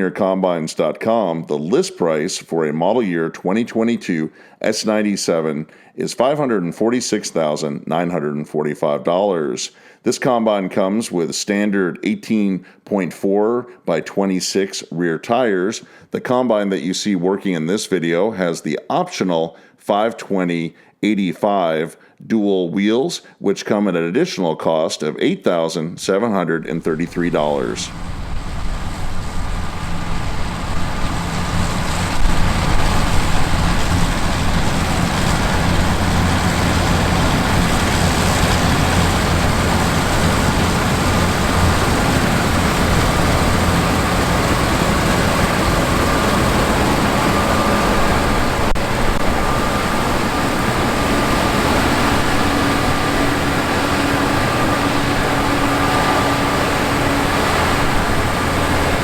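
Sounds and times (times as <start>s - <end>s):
low steady hum: 26.6s - 59.0s
combine harvester diesel engine: 26.7s - 59.0s
threshing machinery whirring: 26.7s - 59.0s.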